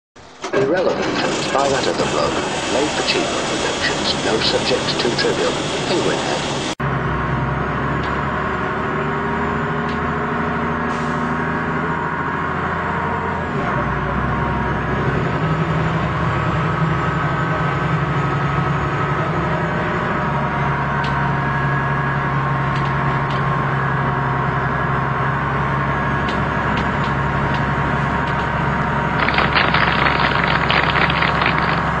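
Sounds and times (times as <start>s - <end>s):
car engine and road noise: 0.2s - 32.0s
harsh hiss with patter: 29.2s - 31.9s.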